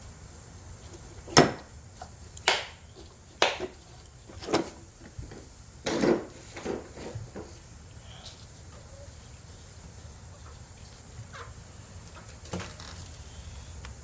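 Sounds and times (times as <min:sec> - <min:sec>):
knocks and clunks of tools: 0:01.3 - 0:01.6, 0:03.4 - 0:07.5.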